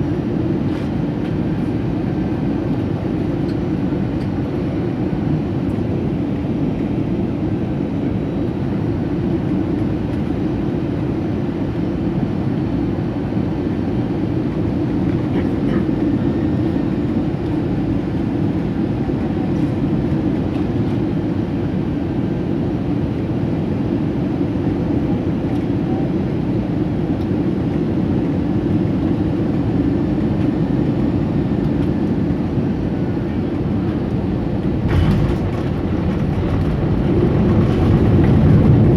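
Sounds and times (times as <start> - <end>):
airplane cabin rumble: 0.0 - 38.9.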